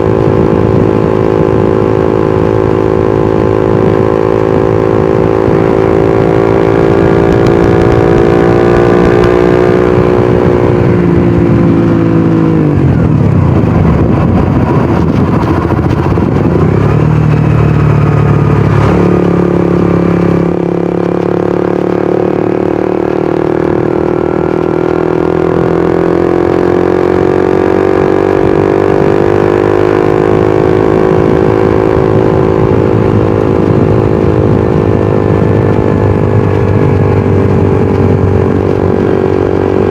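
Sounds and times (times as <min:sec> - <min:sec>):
motorcycle engine and exhaust: 0:00.0 - 0:39.9.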